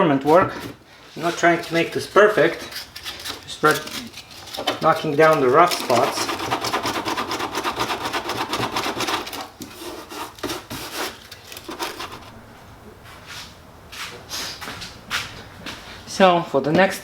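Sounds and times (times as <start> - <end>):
sandpaper scraping plastic: 0.6 - 12.5.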